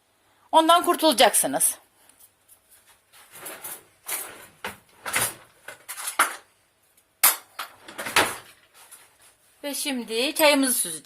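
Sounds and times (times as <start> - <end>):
scraping and knocking handling noises: 2.9 - 6.5, 7.2 - 9.3.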